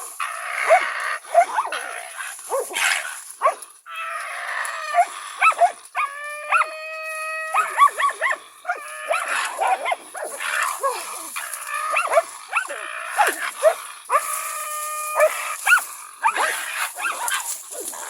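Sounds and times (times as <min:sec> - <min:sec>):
dogs barking in high yaps: 0:00.0 - 0:03.7, 0:04.8 - 0:18.0
dog howling whine: 0:03.9 - 0:18.0.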